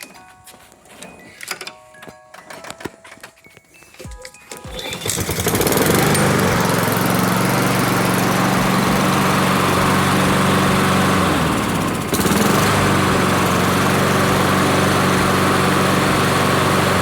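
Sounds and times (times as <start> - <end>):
lawn mower engine running: 4.5 - 17.0.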